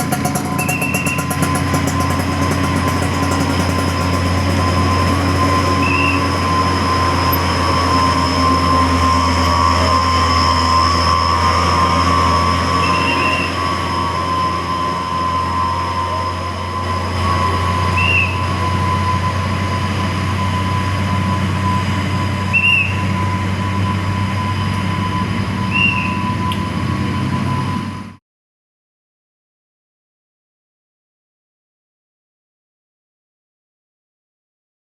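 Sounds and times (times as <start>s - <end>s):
constant high whine: 0.0s - 28.2s
heavy vehicle rumble: 0.0s - 28.2s.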